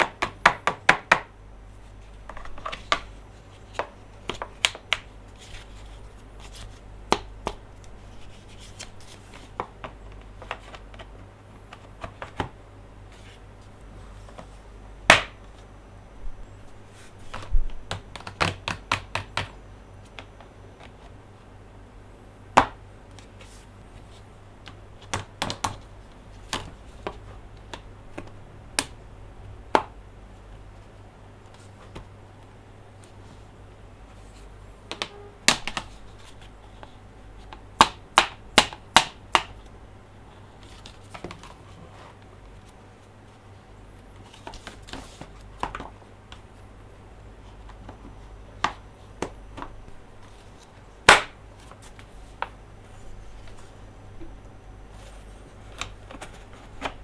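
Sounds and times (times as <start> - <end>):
hands tapping plastic toys: 0.0 - 1.3, 2.3 - 5.1, 9.4 - 11.1, 15.1 - 15.4, 17.3 - 20.9, 34.9 - 36.0, 37.5 - 39.6, 47.8 - 49.9, 51.0 - 51.4
steady low hum: 0.0 - 57.0.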